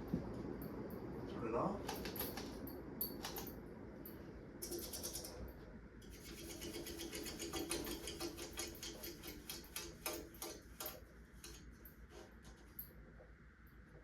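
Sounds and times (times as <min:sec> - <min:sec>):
ceiling fan ticking as it slows: 0:00.0 - 0:05.6.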